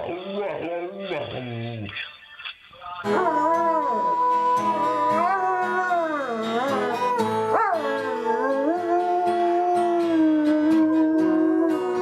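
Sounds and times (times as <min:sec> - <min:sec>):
dog howling: 0:03.1 - 0:12.0.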